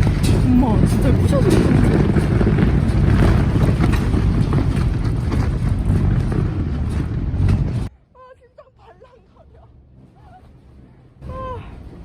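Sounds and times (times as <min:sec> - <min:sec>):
gale wind buffeting microphone: 0:00.0 - 0:07.9.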